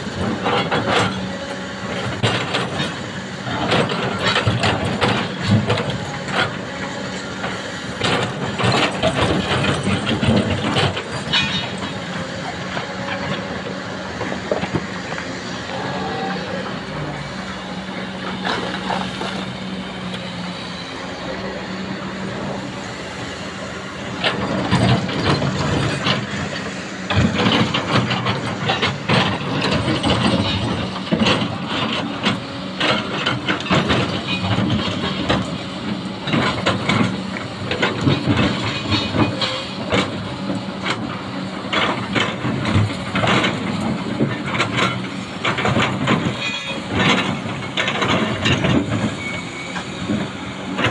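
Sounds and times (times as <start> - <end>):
excavator engine hum: 0.0 - 50.9
metallic clanking and knocking: 7.4 - 15.0.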